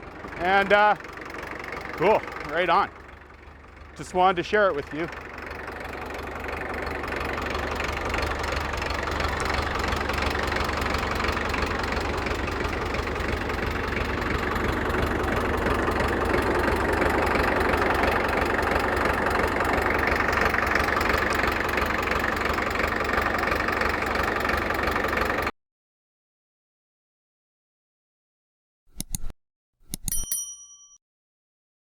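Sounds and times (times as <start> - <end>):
bulldozer diesel engine running: 0.0 - 25.5.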